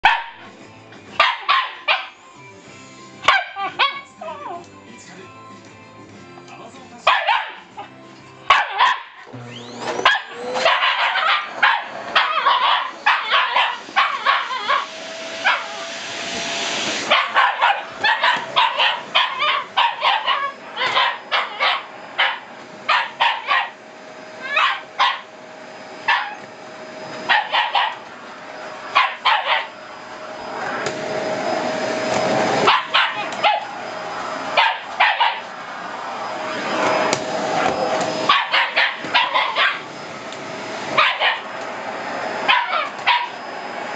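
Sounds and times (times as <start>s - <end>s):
dog barking: 0.0s - 0.5s, 1.2s - 2.2s, 3.3s - 4.4s, 7.1s - 7.9s, 8.5s - 9.3s, 10.0s - 15.8s, 17.1s - 23.8s, 24.4s - 25.3s, 26.0s - 26.4s, 27.3s - 28.1s, 28.9s - 29.8s, 32.6s - 33.7s, 34.6s - 35.5s, 38.3s - 39.9s, 41.0s - 41.5s, 42.5s - 43.4s
vacuum cleaner humming: 0.4s - 43.9s.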